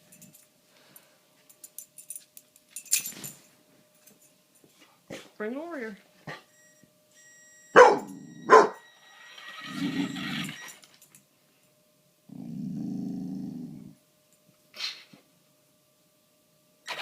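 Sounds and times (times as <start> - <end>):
dog barking: 7.8 - 8.8
dog growling low: 9.7 - 10.5, 12.3 - 14.0.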